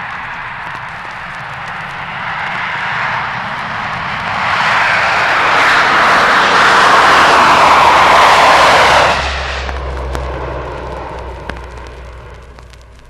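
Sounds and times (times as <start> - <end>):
vinyl surface crackle: 0.0 - 4.3, 9.3 - 13.0
military aircraft passing overhead: 0.0 - 13.0.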